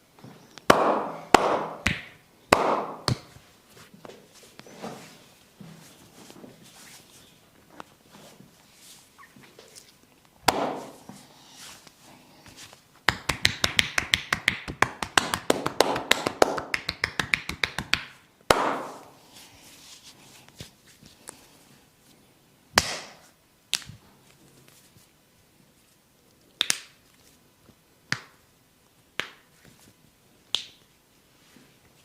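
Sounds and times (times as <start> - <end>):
hands tapping rapidly on head: 0.7 - 3.3, 13.1 - 19.0
sharp hand smacks: 22.8 - 24.0, 26.6 - 27.0, 30.5 - 30.8.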